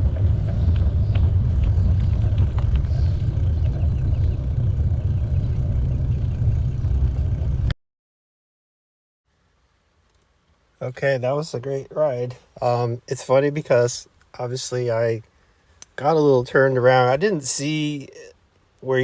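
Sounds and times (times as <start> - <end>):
wind buffeting microphone: 0.0 - 7.7.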